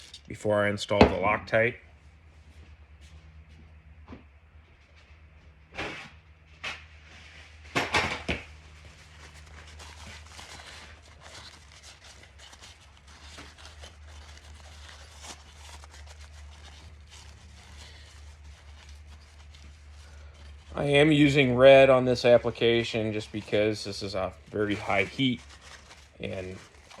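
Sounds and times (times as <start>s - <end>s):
faint rustling: 8.5s - 27.0s.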